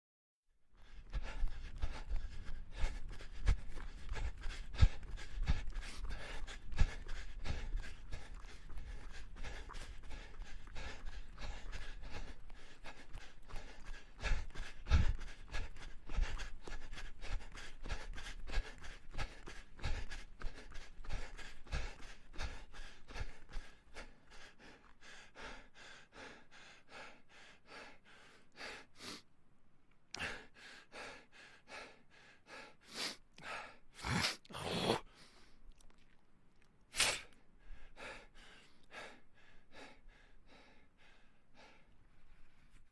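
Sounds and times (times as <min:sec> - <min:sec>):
person gasping for breath: 0:00.8 - 0:29.2, 0:30.1 - 0:35.6
person panting: 0:00.8 - 0:29.2, 0:30.2 - 0:35.6, 0:37.0 - 0:42.9
running footsteps: 0:01.0 - 0:23.7.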